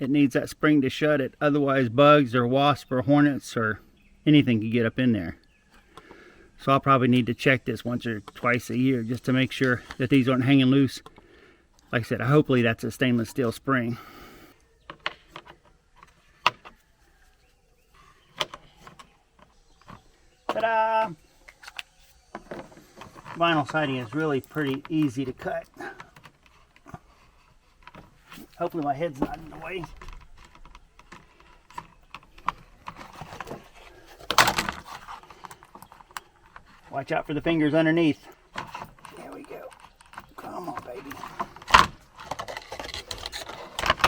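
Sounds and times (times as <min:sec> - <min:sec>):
plastic parts clicking and tapping: 0:14.8 - 0:16.9, 0:18.0 - 0:20.8, 0:21.4 - 0:36.9, 0:38.3 - 0:44.0.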